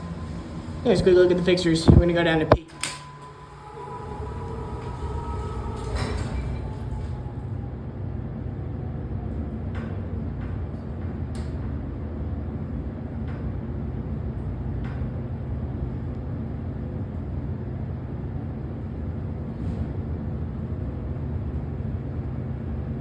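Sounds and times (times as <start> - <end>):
elevator rumble and hum: 0.0 - 23.0.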